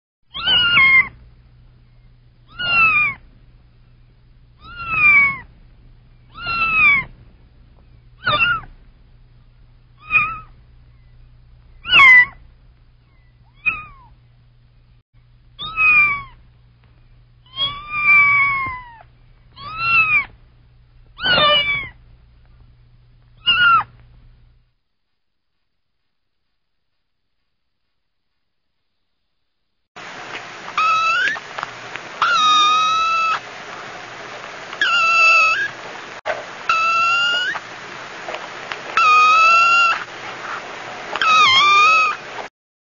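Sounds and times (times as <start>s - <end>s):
kitten meowing: 0.3s - 1.2s, 2.5s - 3.2s, 4.6s - 5.5s, 6.3s - 7.1s, 8.2s - 8.7s, 10.0s - 10.5s, 11.8s - 12.4s, 13.5s - 14.1s, 15.6s - 16.4s, 17.5s - 20.4s, 21.2s - 22.0s, 23.4s - 23.9s, 30.8s - 31.4s, 32.2s - 33.4s, 34.8s - 35.7s, 36.7s - 37.6s, 39.0s - 40.1s, 41.2s - 42.2s
faint low hum: 0.3s - 42.5s.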